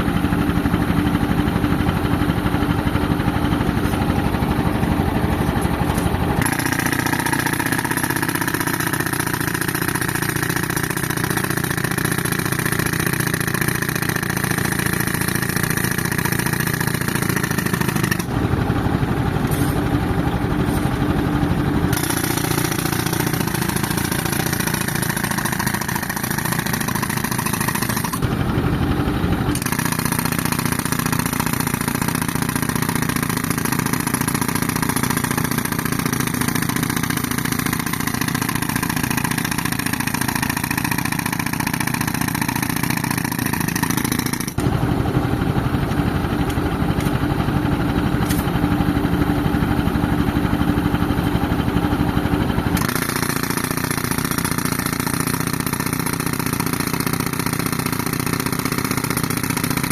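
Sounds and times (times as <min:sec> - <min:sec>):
tractor engine running: 0:00.0 - 0:59.9.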